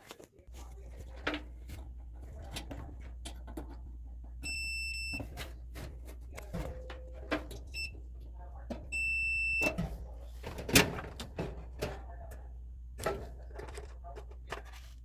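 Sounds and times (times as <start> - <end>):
dryer electrical hum: 0.1 - 15.0
dryer clicks: 0.8 - 14.8.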